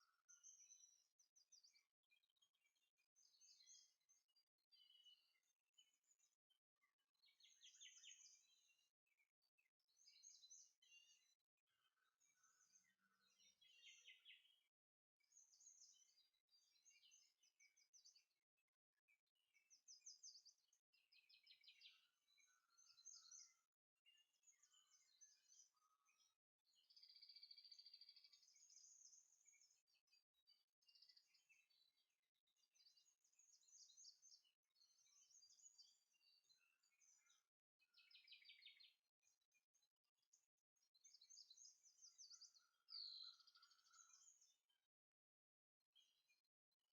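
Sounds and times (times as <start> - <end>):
faint birdsong: 0.0 - 46.9.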